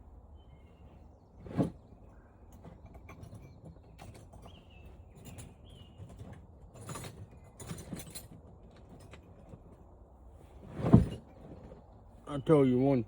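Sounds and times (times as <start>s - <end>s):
hand tools and metal parts rattling: 2.5s - 9.9s.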